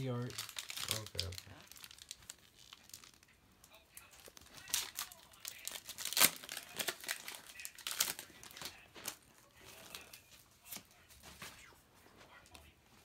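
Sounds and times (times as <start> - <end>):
foil wrapper crinkling and tearing: 0.0 - 10.8.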